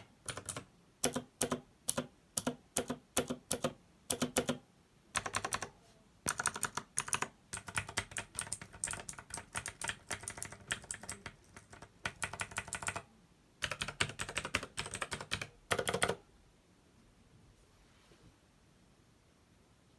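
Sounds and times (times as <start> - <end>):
mechanical keyboard typing: 0.0 - 4.6, 5.2 - 5.7, 6.3 - 13.0, 13.6 - 16.2.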